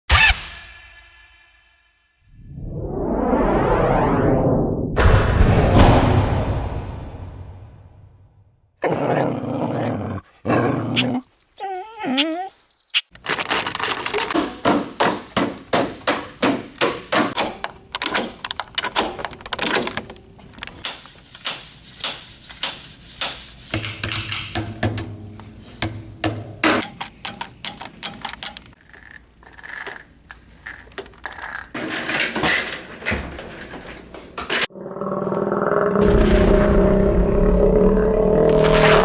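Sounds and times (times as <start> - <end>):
hissing noise: 38.4 - 39.0.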